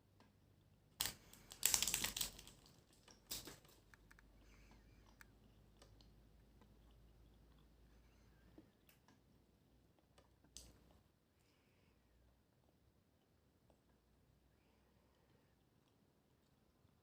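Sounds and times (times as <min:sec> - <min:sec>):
dense crinkling: 0:01.0 - 0:04.2.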